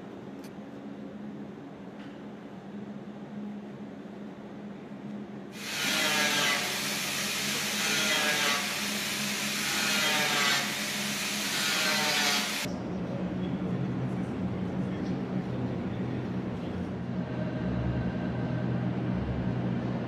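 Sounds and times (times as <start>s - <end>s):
workshop tool hissing: 5.6s - 12.7s.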